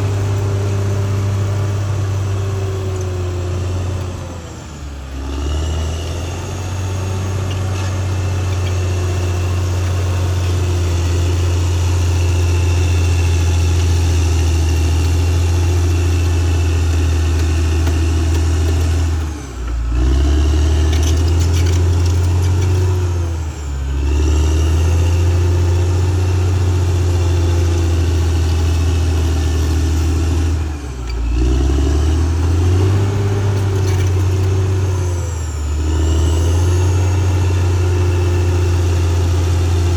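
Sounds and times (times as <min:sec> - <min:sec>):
bulldozer diesel engine working: 0:00.0 - 0:39.9.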